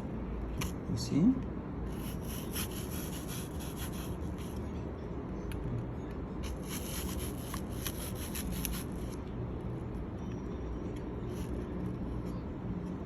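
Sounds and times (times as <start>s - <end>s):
knife scraping an apple: 1.9s - 4.6s, 6.4s - 9.2s.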